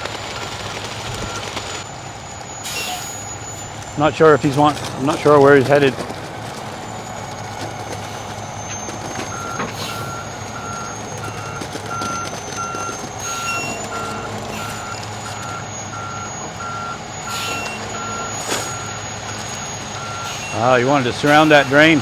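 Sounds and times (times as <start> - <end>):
diesel engine hum: 0.0 - 22.0
reverse alarm beeping: 1.3 - 22.0.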